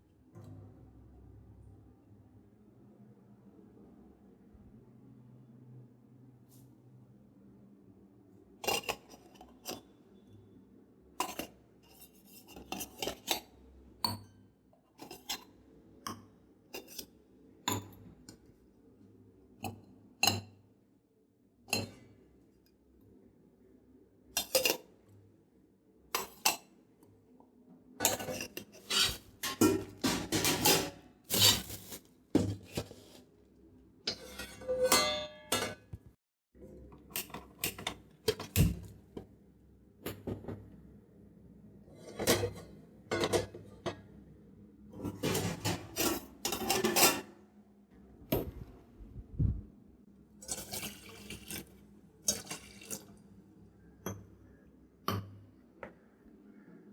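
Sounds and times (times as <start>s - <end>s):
metal vessels clattering: 28.0s - 33.2s, 34.1s - 35.9s, 42.1s - 44.0s, 45.0s - 47.3s.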